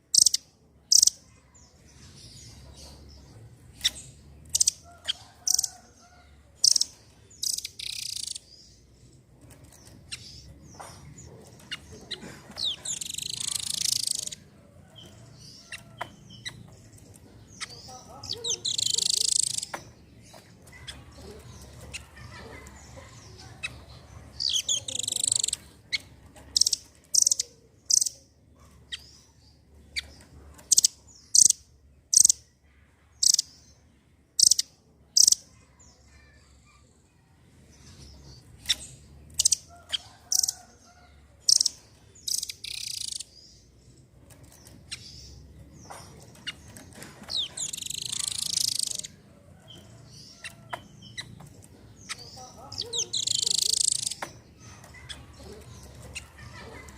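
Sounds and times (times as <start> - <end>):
bird rapid trill: 6.6 - 8.5, 11.1 - 14.5, 17.5 - 19.8, 23.6 - 28.2, 38.6 - 40.6, 41.4 - 43.3, 46.0 - 49.2, 52.0 - 56.9
bird high sharp chips: 12.5 - 14.4, 17.6 - 19.8, 46.0 - 49.1, 52.0 - 56.9.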